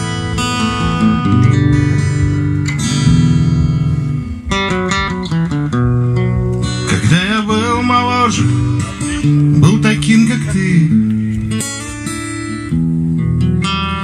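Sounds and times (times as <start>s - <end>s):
acoustic guitar music: 0.0s - 14.0s.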